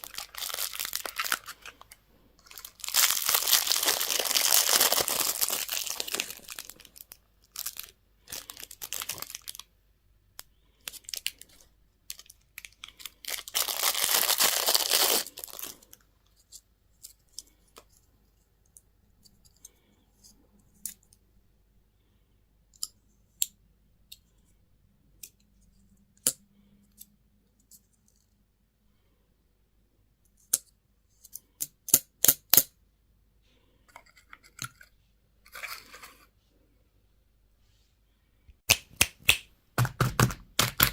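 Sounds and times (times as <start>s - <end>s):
packaging torn and crinkled: 0.0s - 9.6s, 10.9s - 16.0s.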